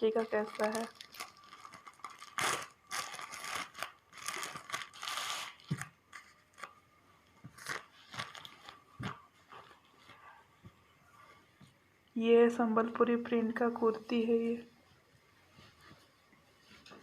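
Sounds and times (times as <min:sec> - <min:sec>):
crinkling rustles: 0:00.0 - 0:06.8, 0:07.5 - 0:10.5
packaging being torn open: 0:00.2 - 0:06.8, 0:07.6 - 0:08.8.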